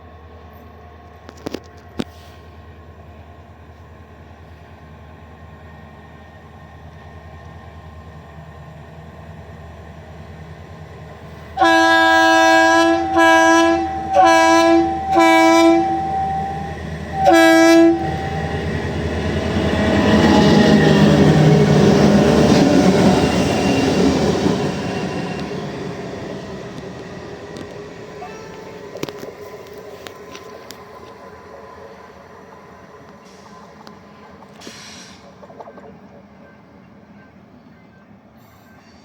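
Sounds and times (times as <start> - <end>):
approaching train rumble: 0.0 - 39.0
locomotive air horn blasts: 11.6 - 18.7, 28.2 - 29.1.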